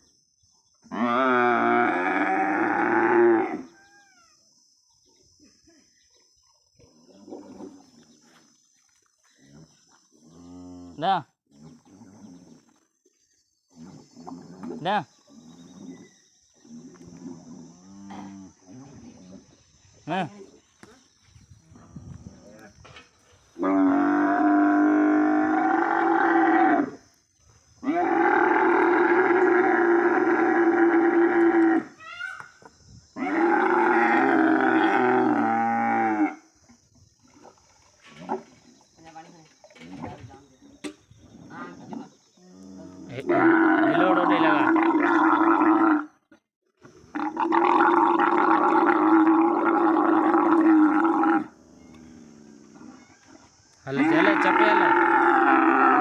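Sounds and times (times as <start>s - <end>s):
camel bellowing: 43.1s - 46.1s, 47.1s - 53.2s, 53.9s - 56.0s.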